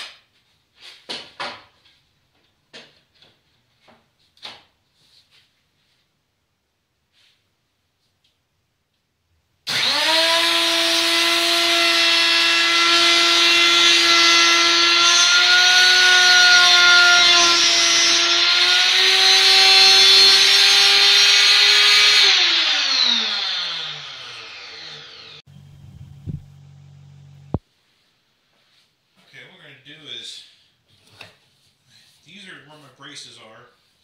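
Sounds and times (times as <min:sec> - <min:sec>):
router whining cutting wood: 0:09.7 - 0:25.4.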